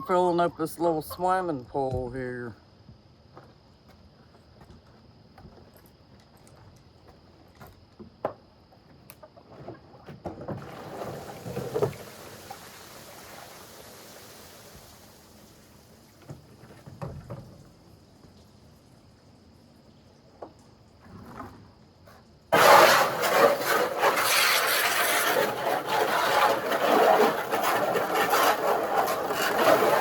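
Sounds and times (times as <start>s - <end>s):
water running into a pool: 10.5s - 20.8s, 22.5s - 30.0s.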